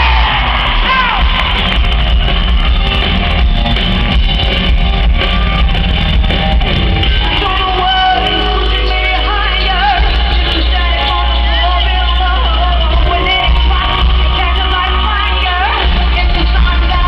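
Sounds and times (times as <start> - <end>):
live pop band music: 0.0 - 17.0
woman singing: 7.2 - 17.0.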